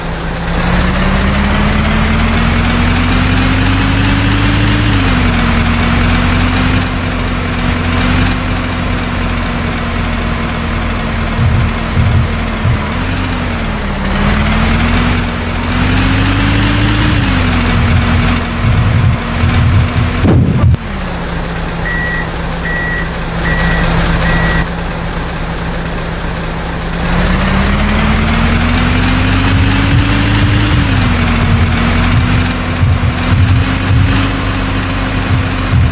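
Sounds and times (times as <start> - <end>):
heavy diesel engine running: 0.0 - 35.9
reversing alarm beeps: 21.8 - 24.7.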